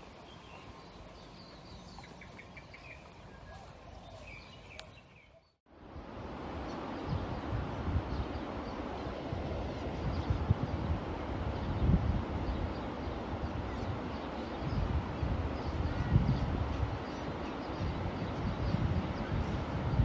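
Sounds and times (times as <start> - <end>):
small birds chirping: 0.0 - 5.6, 11.5 - 20.0
gusty wind buffeting microphone: 0.0 - 20.0.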